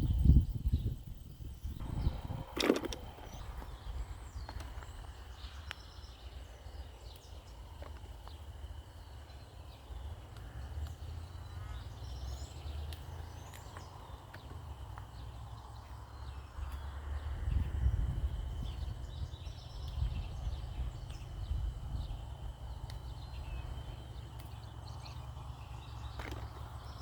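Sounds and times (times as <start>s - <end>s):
low rumble: 0.0s - 5.6s
birds chirping: 0.0s - 27.0s
high-pitched hum: 1.7s - 4.3s.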